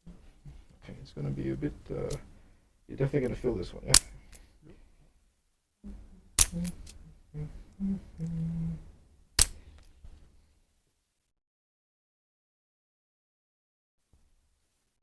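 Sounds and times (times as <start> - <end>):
person humming: 5.8 - 9.0.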